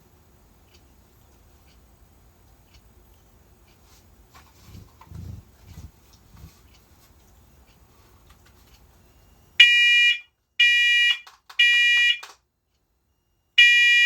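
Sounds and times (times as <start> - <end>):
smoke alarm shrill beeps: 9.6 - 12.3, 13.6 - 14.0.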